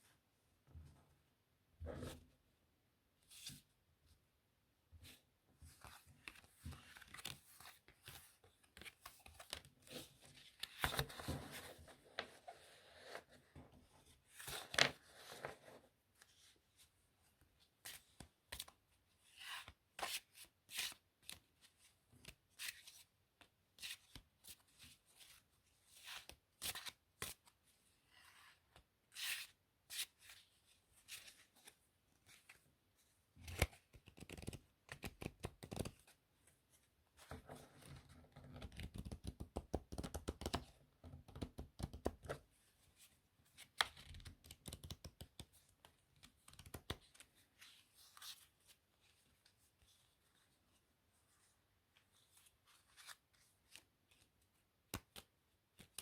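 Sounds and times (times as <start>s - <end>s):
playing cards shuffled: 5.8s - 13.4s, 33.4s - 36.0s, 52.3s - 54.3s.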